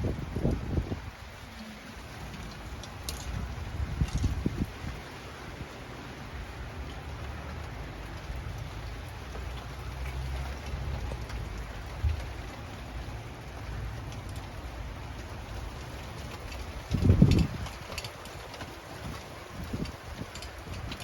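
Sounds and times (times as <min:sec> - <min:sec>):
wind buffeting microphone: 0:00.0 - 0:05.8, 0:13.9 - 0:21.0
rain falling: 0:00.0 - 0:21.0.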